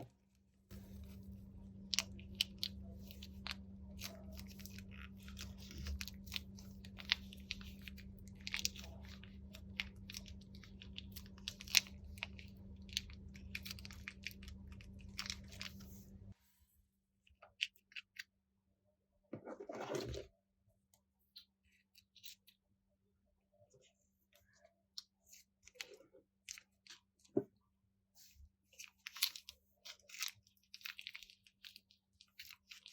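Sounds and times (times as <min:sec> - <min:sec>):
steady low hum: 0:00.7 - 0:16.4.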